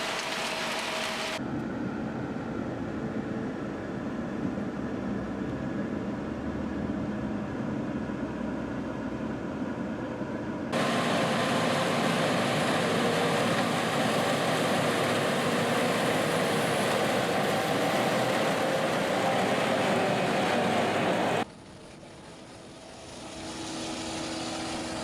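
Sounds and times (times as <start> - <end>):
farm machinery running: 0.0 - 1.4, 10.8 - 25.0.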